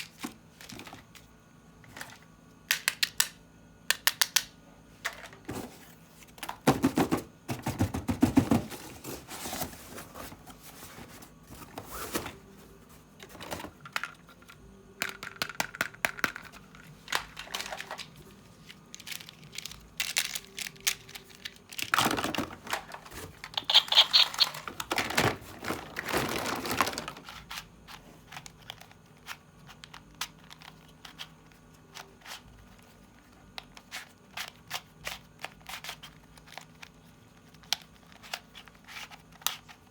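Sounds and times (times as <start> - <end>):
packaging crinkling and tearing: 19.0 - 27.3.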